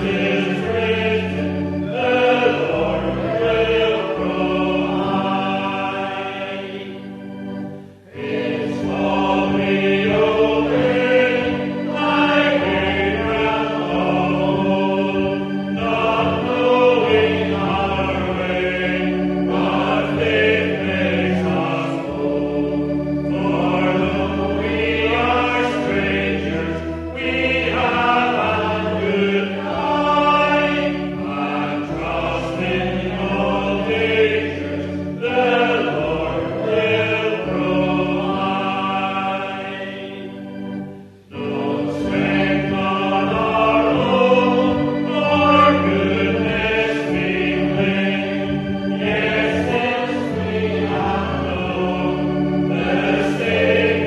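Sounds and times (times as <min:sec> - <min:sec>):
congregation singing a hymn: 0:00.0 - 0:54.0
low held accompaniment notes: 0:00.0 - 0:54.0.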